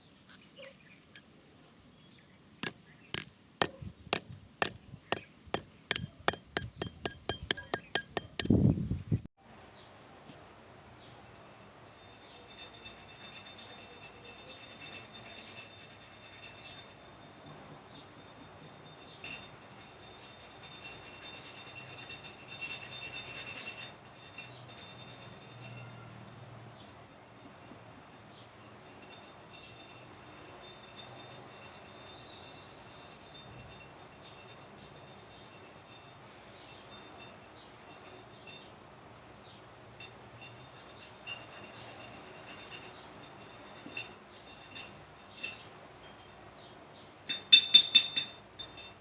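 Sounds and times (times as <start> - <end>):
rasping scrape on metal: 2.6 - 8.5, 12.0 - 17.4, 19.0 - 26.1
hammer tapping on metal: 2.6 - 8.6.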